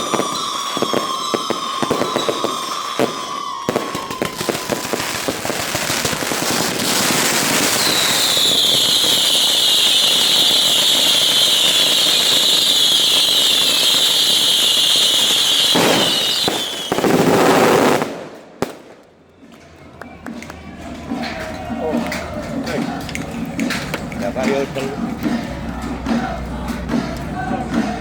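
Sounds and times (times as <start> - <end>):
loud high whistle: 0.0 - 4.8, 7.7 - 17.2
fireworks crackling and popping: 0.0 - 28.0.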